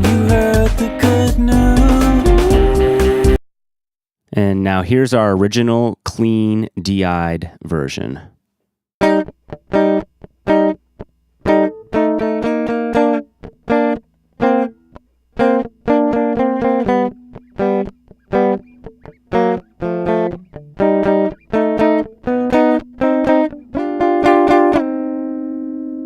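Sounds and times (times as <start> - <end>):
clean electric guitar strumming: 0.0 - 3.4, 9.0 - 26.0.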